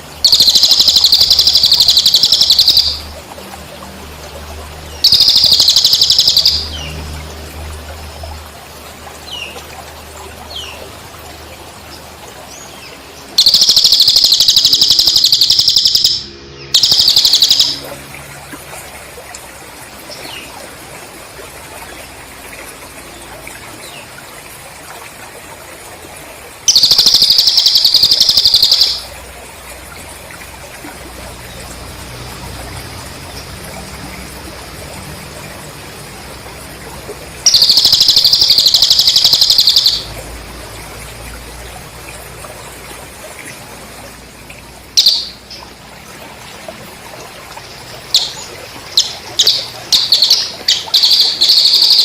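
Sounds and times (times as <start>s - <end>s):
pulsed cricket trills: 0.0s - 3.2s, 5.0s - 6.8s, 13.4s - 18.3s, 26.7s - 29.2s, 32.6s - 41.7s, 47.6s - 52.0s.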